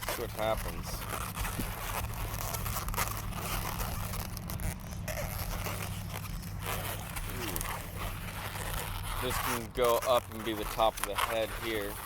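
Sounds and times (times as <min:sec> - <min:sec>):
balloons rubbing and crinkling: 0:00.0 - 0:12.0.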